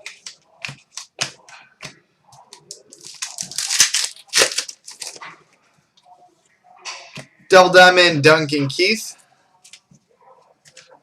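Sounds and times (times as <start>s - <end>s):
packaging crinkling and rustling: 2.5s - 5.3s.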